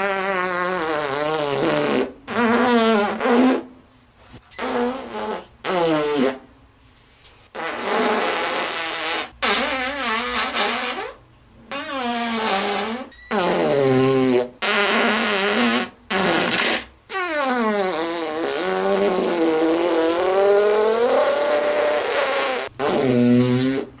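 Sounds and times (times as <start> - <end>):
fart sound effects: 0.0 - 3.7, 4.5 - 6.4, 7.5 - 24.0.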